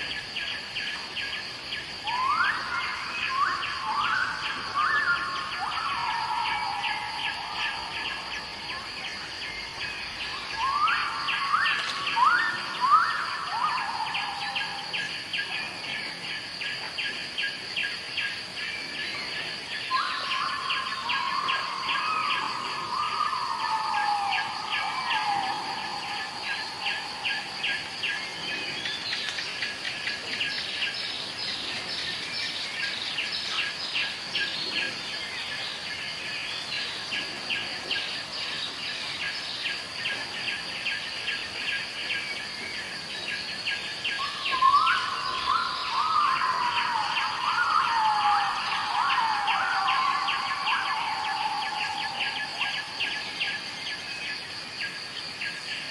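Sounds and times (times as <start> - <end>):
falling whistled bird calls: 2.0 - 15.1, 19.8 - 29.6, 43.7 - 53.6.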